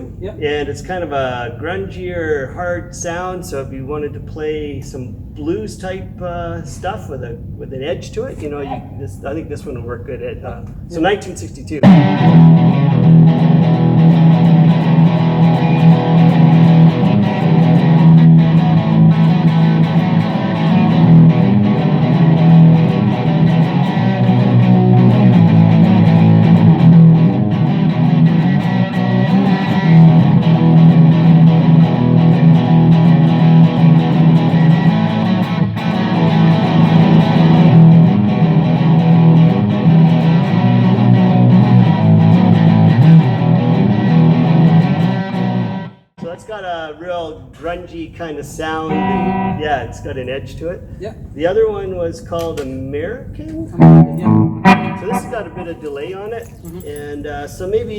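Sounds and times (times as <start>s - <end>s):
overdriven electric guitar: 11.8s - 46.0s, 48.9s - 49.8s, 53.8s - 55.9s.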